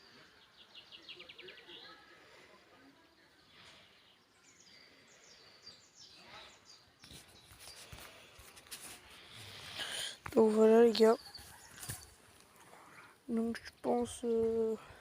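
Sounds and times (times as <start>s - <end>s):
small bird chirping: 9.2s - 14.7s.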